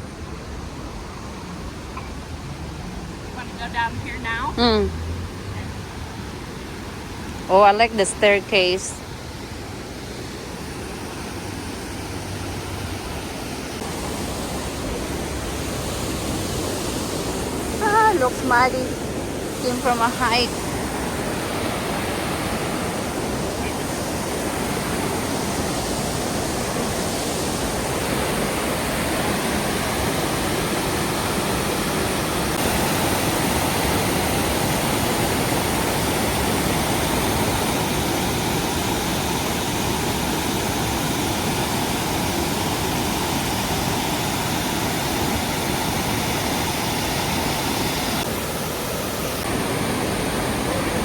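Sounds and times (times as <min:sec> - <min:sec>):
waterfall rushing: 0:05.2 - 0:51.0.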